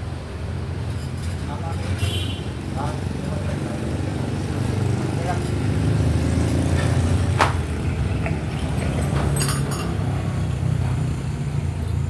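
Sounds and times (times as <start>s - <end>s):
light clinks: 8.8s - 10.4s.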